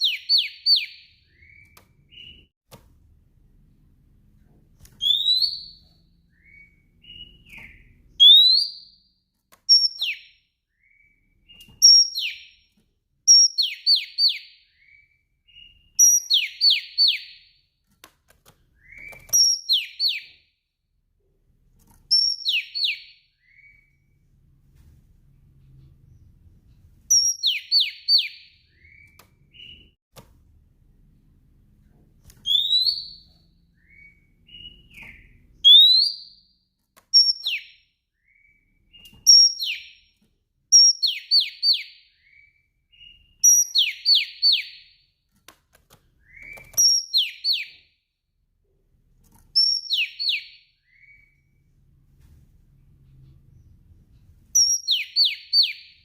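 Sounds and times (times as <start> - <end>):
bird whistled calls: 5.0 - 8.8, 33.8 - 36.3, 54.6 - 55.9.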